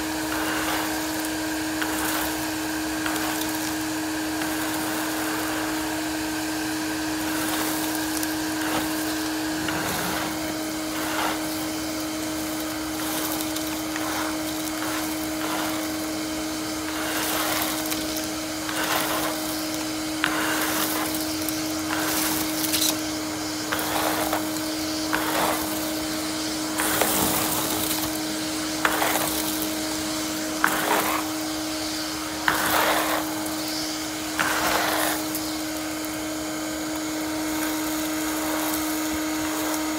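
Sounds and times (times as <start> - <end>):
leaves sucked up hose: 0.0 - 39.9
shop vacuum motor whine: 0.0 - 39.9.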